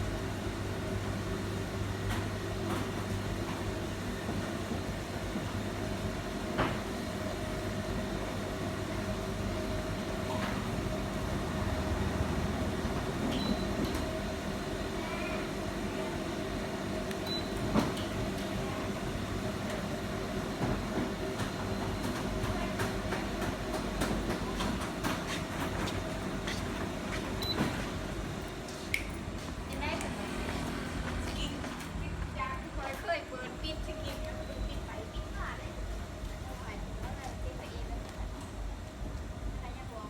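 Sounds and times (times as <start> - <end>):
roller shutter motor running: 10.0 - 33.6.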